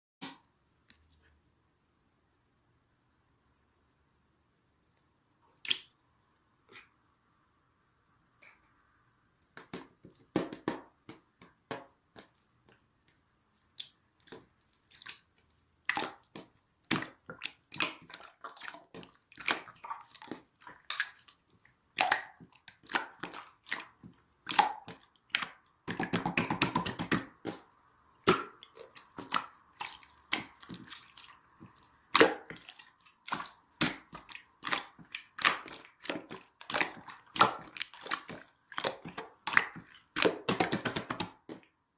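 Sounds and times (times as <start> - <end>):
slime squelching and popping: 5.6 - 6.0, 9.5 - 41.8.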